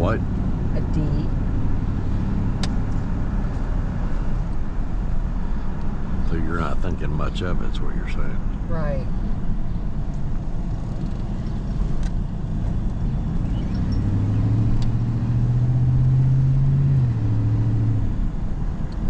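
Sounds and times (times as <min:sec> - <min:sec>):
road and engine rumble: 0:00.0 - 0:19.0
engine note rising: 0:13.3 - 0:19.0.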